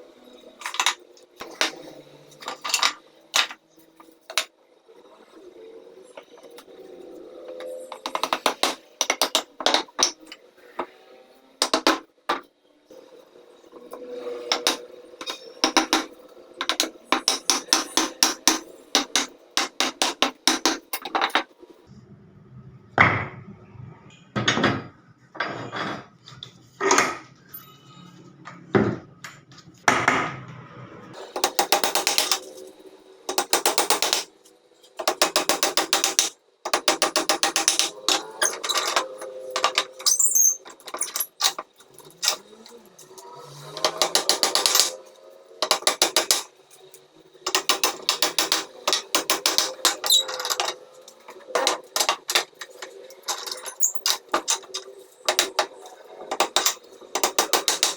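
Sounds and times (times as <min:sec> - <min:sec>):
knocks: 0:14.5 - 0:21.4
hand tool mechanical clicks: 0:45.6 - 0:46.5, 0:47.4 - 0:50.8, 0:56.3 - 0:57.9.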